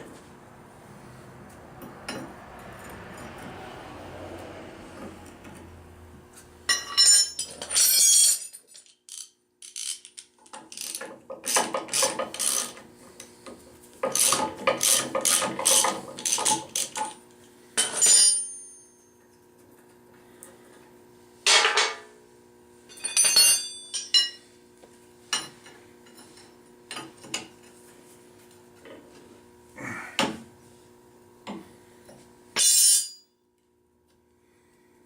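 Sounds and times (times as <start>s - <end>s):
wrench and metal parts clinking: 6.7s - 12.7s, 22.9s - 24.4s, 32.6s - 33.2s.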